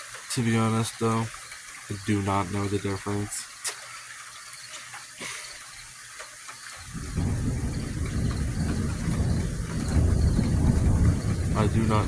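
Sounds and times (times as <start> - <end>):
steady rain hiss: 0.0 - 12.0
deep rumble of thunder: 6.9 - 12.0.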